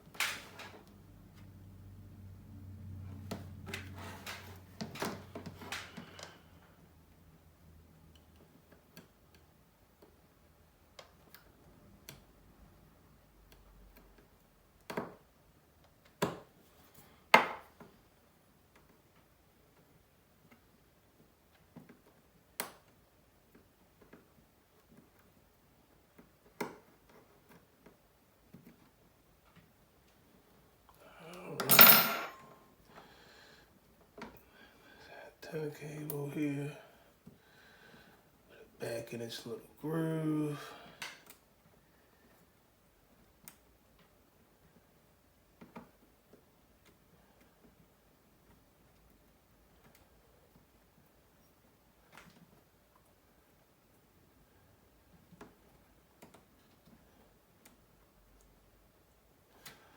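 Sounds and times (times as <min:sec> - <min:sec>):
hand tools clicking and tapping: 0:31.6 - 0:32.5.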